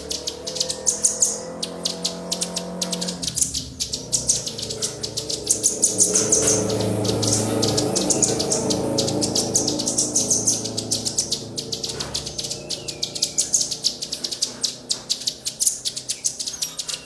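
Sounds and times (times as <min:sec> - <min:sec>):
low steady hum: 0:00.0 - 0:16.2
small songbirds chirping: 0:00.0 - 0:17.0.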